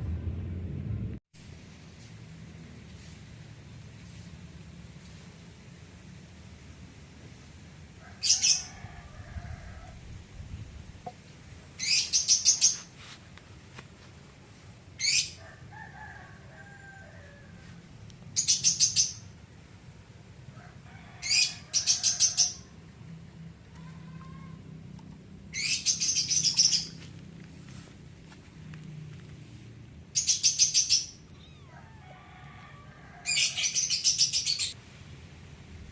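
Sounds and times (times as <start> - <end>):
songbird high-pitched chirps: 11.8 - 12.9, 18.3 - 19.3, 25.5 - 27.0, 33.3 - 34.8.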